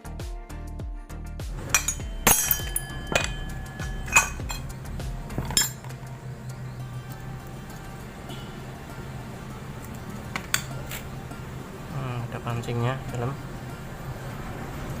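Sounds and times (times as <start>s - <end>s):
hand tools clinking on metal: 1.6s - 6.1s, 10.3s - 11.1s.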